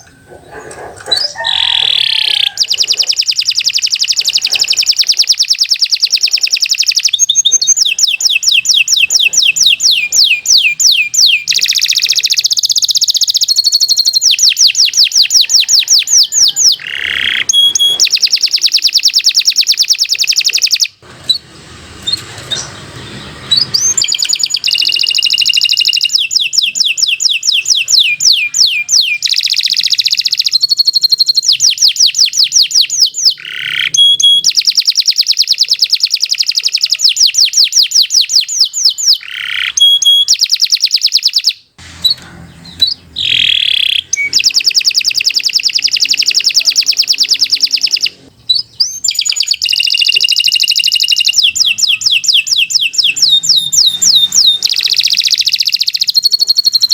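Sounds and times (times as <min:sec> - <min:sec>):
canary singing trills: 0:00.0 - 0:56.9.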